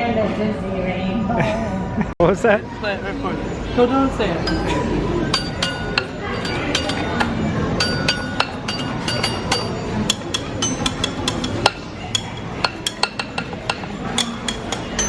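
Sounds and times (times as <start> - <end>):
background murmur: 0.0 - 15.0
ringing clinks and taps: 4.4 - 15.0.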